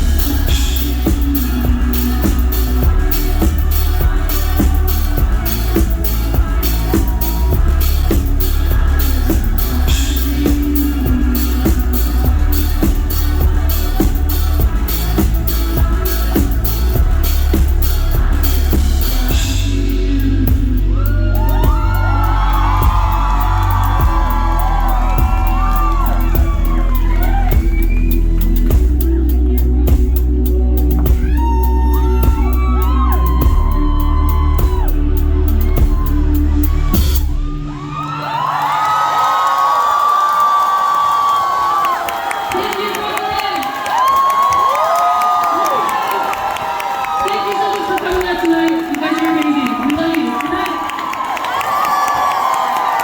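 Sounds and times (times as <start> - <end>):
crowd whooping: 0.0 - 19.5, 20.9 - 29.6, 31.0 - 53.0
drum kit steady beat: 0.0 - 38.4
heavy low bass: 0.0 - 38.7
live band music: 0.0 - 39.4
crowd cheering: 0.0 - 53.0.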